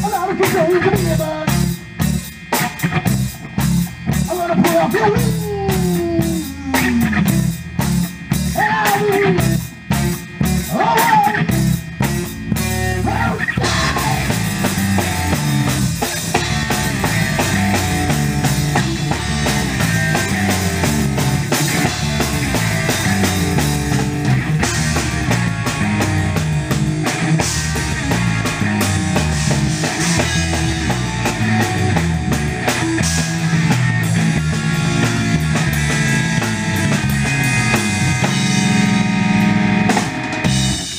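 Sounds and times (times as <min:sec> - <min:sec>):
live rock band playing: 0:00.0 - 0:40.9
sliding guitar notes: 0:04.8 - 0:10.7, 0:11.3 - 0:40.8
drum kit hits: 0:11.5 - 0:40.9.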